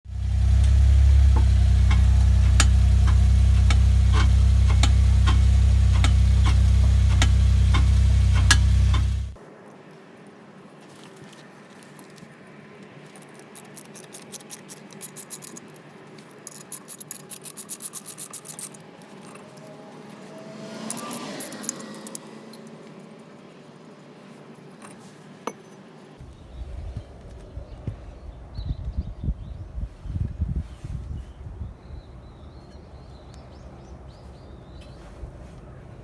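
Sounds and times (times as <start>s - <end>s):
rhythmic scraping strokes: 0.1s - 9.4s
rising and falling whine: 0.1s - 9.4s.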